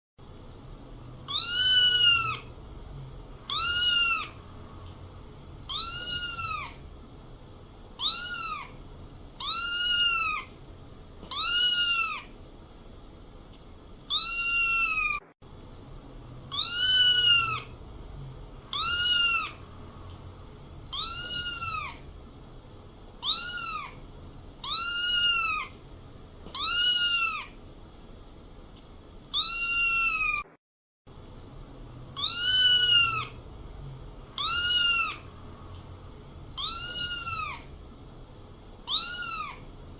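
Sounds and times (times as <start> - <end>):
kitten meowing: 1.2 - 2.5, 3.5 - 4.4, 5.6 - 6.8, 8.0 - 8.8, 9.4 - 10.5, 11.3 - 12.3, 14.1 - 15.2, 16.5 - 17.8, 18.7 - 19.6, 20.9 - 22.1, 23.2 - 24.0, 24.6 - 25.8, 26.5 - 27.6, 29.3 - 30.5, 32.1 - 33.4, 34.3 - 35.3, 36.5 - 37.7, 38.8 - 39.7.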